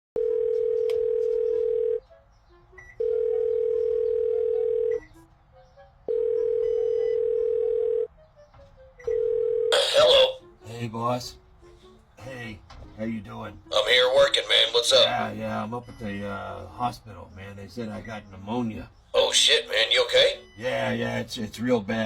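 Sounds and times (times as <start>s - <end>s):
telephone ringback tone: 0.2s - 2.1s, 2.8s - 5.2s, 6.1s - 8.1s, 9.0s - 10.4s.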